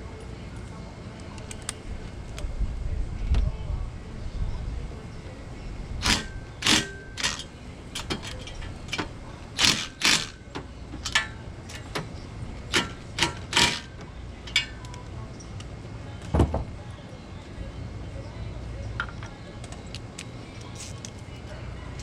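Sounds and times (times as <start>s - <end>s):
metal tools clinking: 6.0s - 12.1s.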